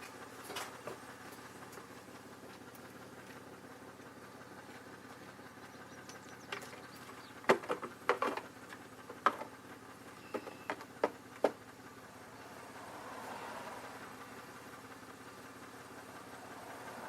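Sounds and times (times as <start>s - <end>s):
car engine idling: 0.0s - 17.0s
sharp knocks and clicks: 7.4s - 9.5s, 10.3s - 11.6s.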